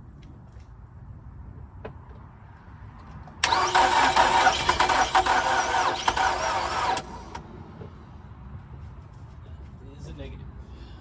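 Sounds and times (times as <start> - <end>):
car starter cranking engine: 3.4 - 7.4.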